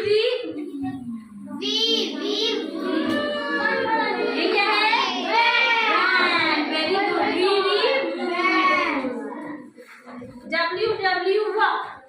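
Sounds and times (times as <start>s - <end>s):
children chanting in unison: 1.6s - 9.6s.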